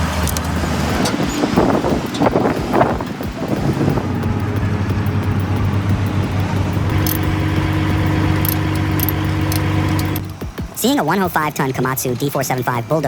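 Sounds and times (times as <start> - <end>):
vehicle engine running: 0.0 - 10.7
steady hum: 6.0 - 10.4.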